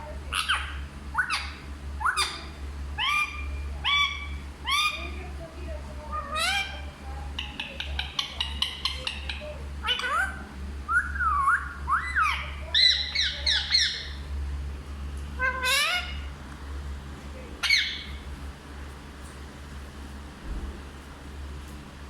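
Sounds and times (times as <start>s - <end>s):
parrot squawking and chirping: 0.3s - 5.2s, 6.1s - 14.3s, 15.4s - 16.4s, 17.6s - 18.2s.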